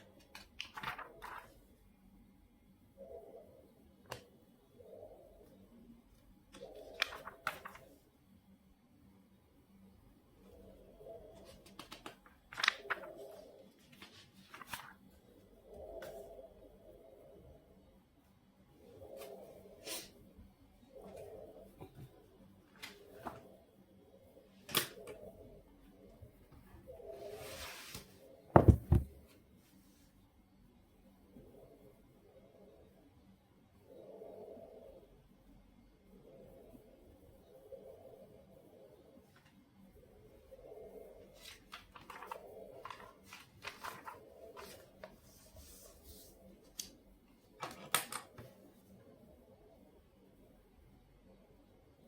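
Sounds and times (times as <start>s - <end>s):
heavy thumps on desk: 28.6s - 29.1s
rustles and clicks of handling: 41.4s - 47.0s.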